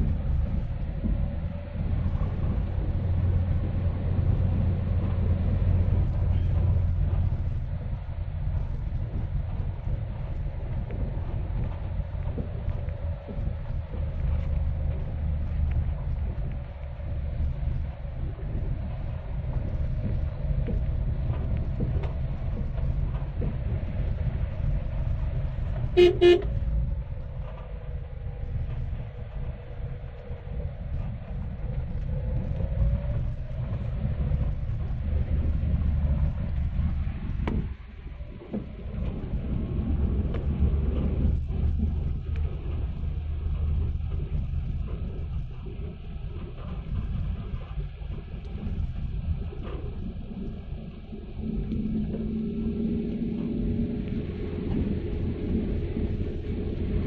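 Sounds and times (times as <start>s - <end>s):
car engine and road rumble: 0.0s - 57.0s
vehicle horn toots: 26.0s - 26.5s.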